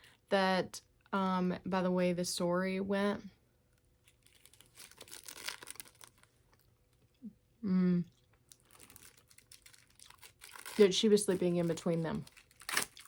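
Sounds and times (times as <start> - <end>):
sticky fruit snack peeled and chewed: 4.0 - 7.0, 8.1 - 13.0
person humming: 7.6 - 8.1.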